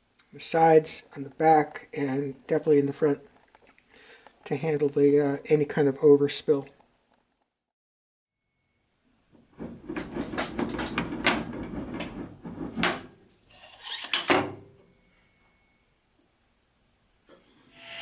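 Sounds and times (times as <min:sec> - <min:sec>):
wood scraping: 0:09.4 - 0:14.3
wooden knocks and clicks: 0:09.5 - 0:13.2.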